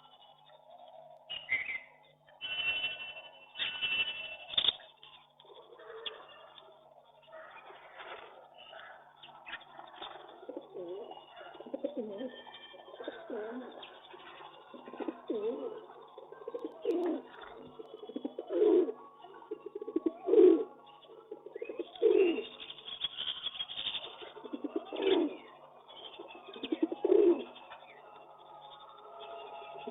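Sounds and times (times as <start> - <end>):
pigeons cooing: 5.4 - 22.8, 24.0 - 27.8.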